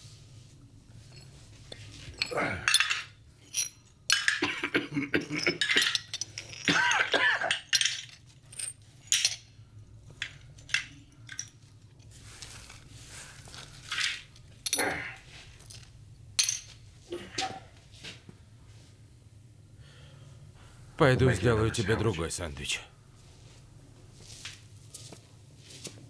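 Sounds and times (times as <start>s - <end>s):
ceramic shards clinking and scraping: 1.0s - 17.8s.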